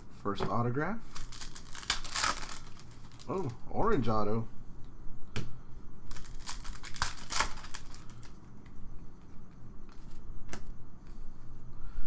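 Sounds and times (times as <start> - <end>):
card wrappers crinkling: 1.1 - 3.5, 6.1 - 8.7.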